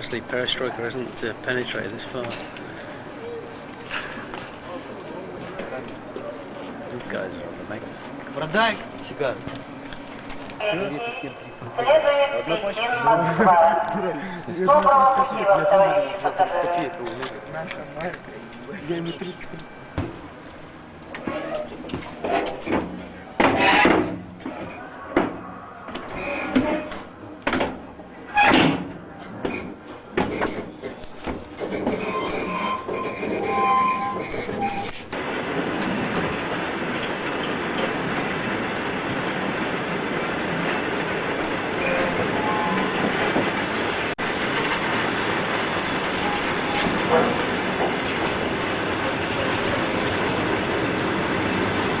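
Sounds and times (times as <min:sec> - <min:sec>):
train doors sliding and banging: 0:21.0 - 0:52.0
train knock: 0:39.8 - 0:48.8.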